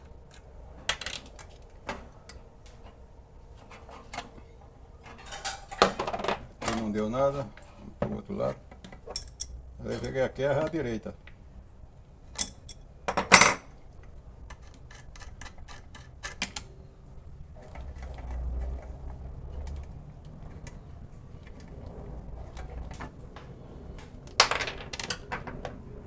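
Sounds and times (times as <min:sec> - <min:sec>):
metal parts clicking and clattering: 0:08.9 - 0:10.2, 0:12.4 - 0:13.6.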